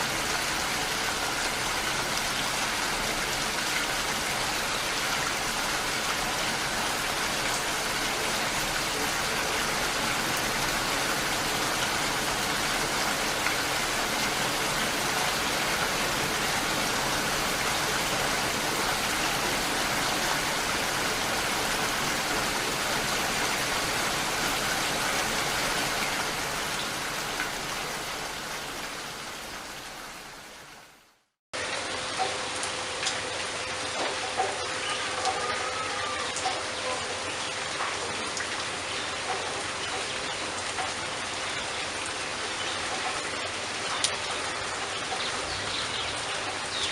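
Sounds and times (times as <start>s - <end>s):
steady rain falling: 0.0s - 46.9s
raindrops tapping: 31.6s - 46.9s.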